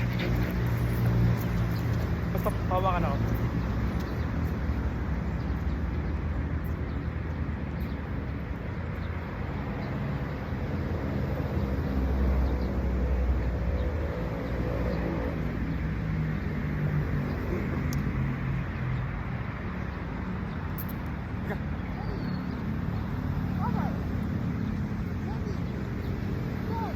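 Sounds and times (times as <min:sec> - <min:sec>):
vehicle engine rumbling: 0:00.0 - 0:10.3.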